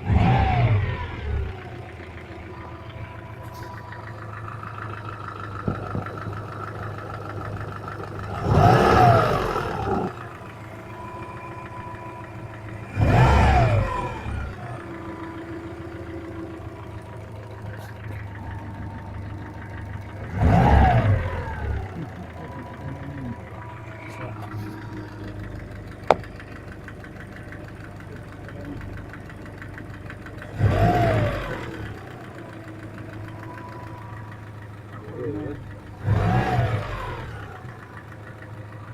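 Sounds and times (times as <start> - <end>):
car engine idling and revving: 0.0 - 38.9
engine knock: 0.0 - 38.9.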